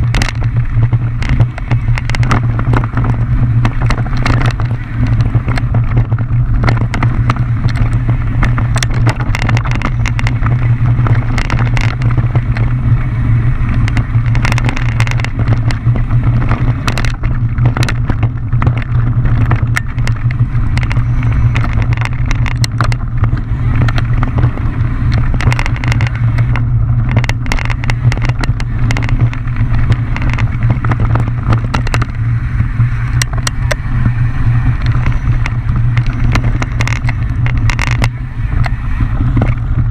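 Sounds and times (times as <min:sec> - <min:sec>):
bike clicking and rattling: 0:00.0 - 0:39.9
wind and tyre rumble: 0:00.0 - 0:39.9.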